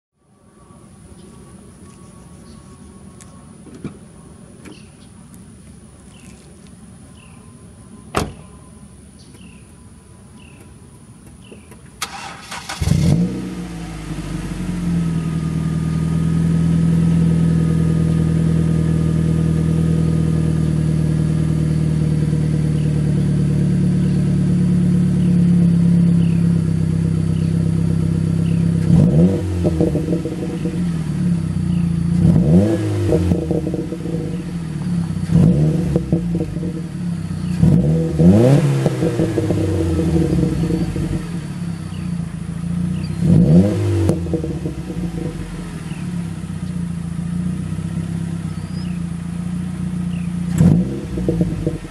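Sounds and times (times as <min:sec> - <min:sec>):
car engine idling and revving: 0:04.4 - 0:51.9
starter cranking engine: 0:12.0 - 0:13.1.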